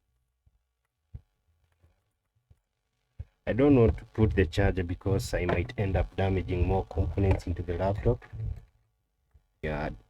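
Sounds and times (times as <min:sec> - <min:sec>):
short knocks: 0:05.3 - 0:08.7.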